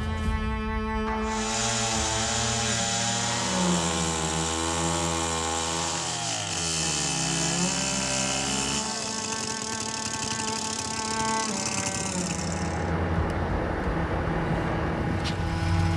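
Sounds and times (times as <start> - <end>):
chainsaw cutting wood: 1.2 - 13.0.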